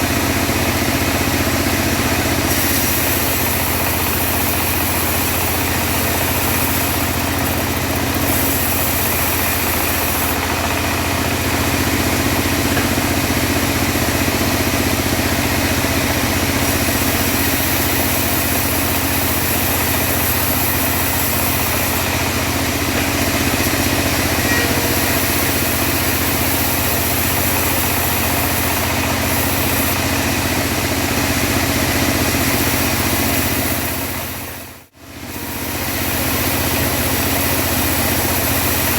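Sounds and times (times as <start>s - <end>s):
sawmill engine running: 0.0s - 38.9s
band blade cutting wood: 2.5s - 10.5s, 16.6s - 30.0s.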